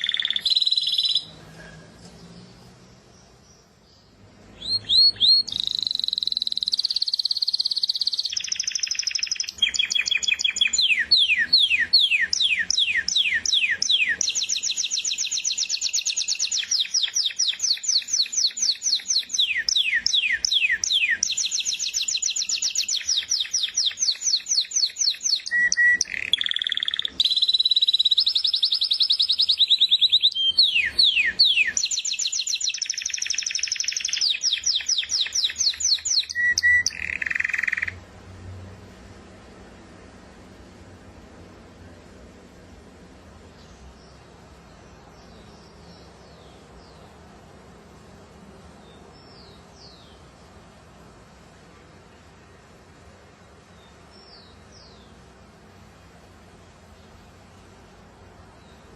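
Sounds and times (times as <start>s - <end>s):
canary singing trilled song: 0.0s - 38.0s.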